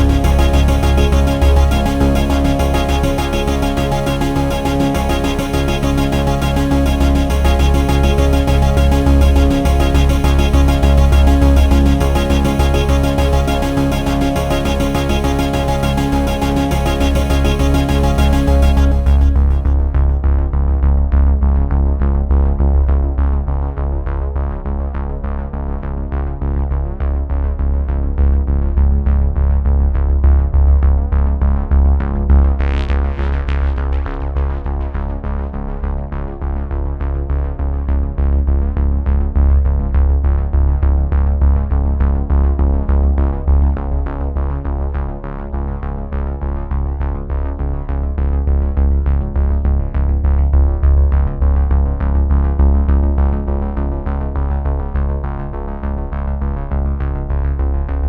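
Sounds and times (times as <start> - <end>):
synth sweep: 0.0 - 20.2
synthesizer music with steady bass: 0.0 - 20.6, 47.8 - 58.0.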